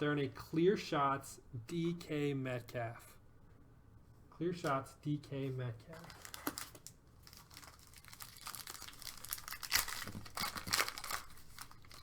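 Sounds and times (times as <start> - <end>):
foil wrapper crinkling: 5.9 - 12.0.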